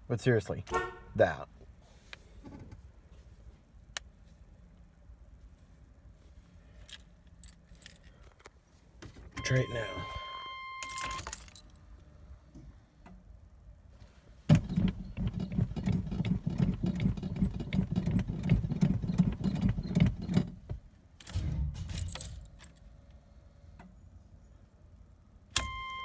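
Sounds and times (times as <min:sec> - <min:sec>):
starter cranking engine: 0:14.5 - 0:20.6.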